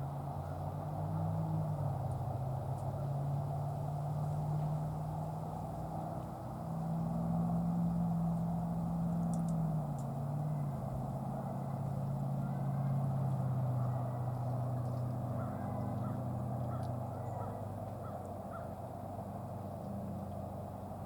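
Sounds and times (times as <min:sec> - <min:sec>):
low engine hum: 0:00.0 - 0:21.0
crows calling: 0:11.6 - 0:18.8.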